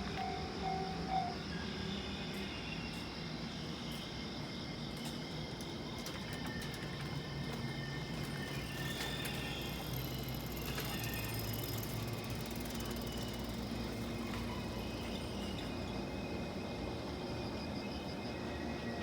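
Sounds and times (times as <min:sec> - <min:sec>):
level-crossing warning bell: 0:00.0 - 0:02.6.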